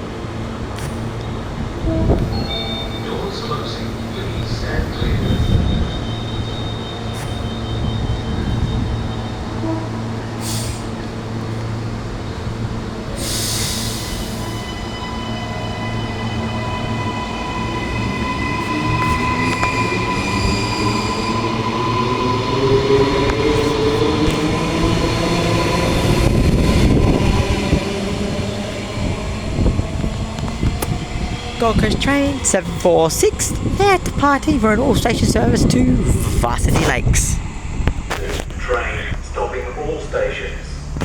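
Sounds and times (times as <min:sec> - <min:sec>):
electric train humming: 0:00.0 - 0:41.0
high whistling tones: 0:02.2 - 0:09.6.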